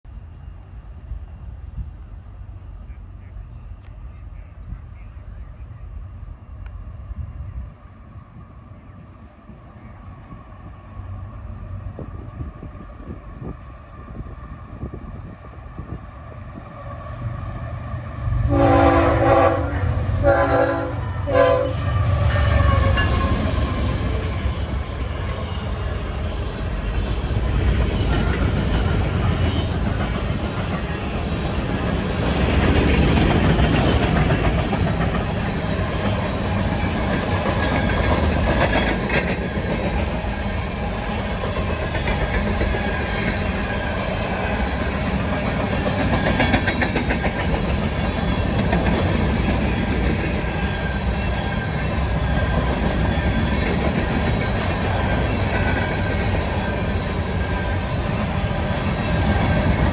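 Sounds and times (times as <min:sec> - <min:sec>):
locomotive air horn blasts: 0:18.3 - 0:23.9
train wheels clattering over rail joints: 0:26.6 - 0:59.9.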